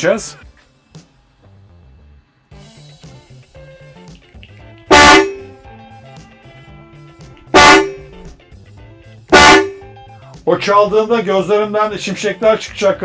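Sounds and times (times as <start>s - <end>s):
electric trumpet car horns blasting: 4.9s - 5.6s, 7.5s - 8.2s, 9.3s - 9.9s.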